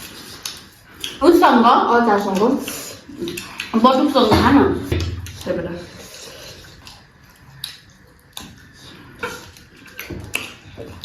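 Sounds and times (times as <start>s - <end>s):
wet mouth clicks while chewing: 0.0s - 1.2s, 2.2s - 3.8s, 4.9s - 11.0s.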